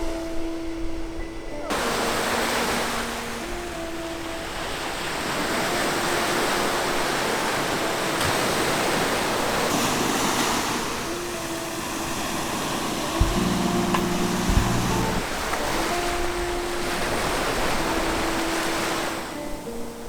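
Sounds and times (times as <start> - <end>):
waves breaking on shore: 1.6 - 20.0
thump: 13.2 - 15.2
low steady tone: 13.2 - 15.3.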